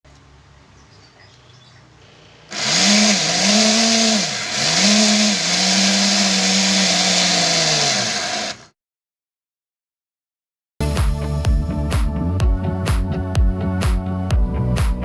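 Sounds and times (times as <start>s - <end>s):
small motor whirring: 2.0s - 8.7s.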